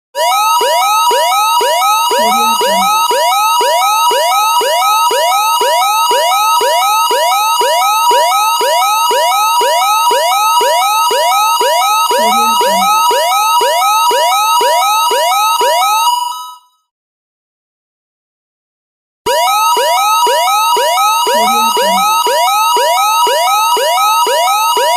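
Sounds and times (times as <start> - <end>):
rising electronic alarm sweeps: 1.8 - 3.3, 12.1 - 13.2, 21.0 - 22.3
two-tone high-low beep: 2.2 - 3.0, 12.2 - 13.0, 21.3 - 22.2.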